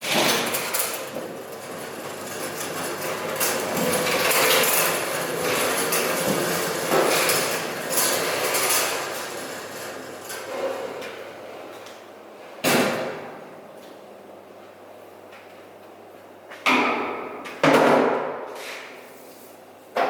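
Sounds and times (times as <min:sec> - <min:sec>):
equipment knocking and clattering: 0:00.0 - 0:09.3.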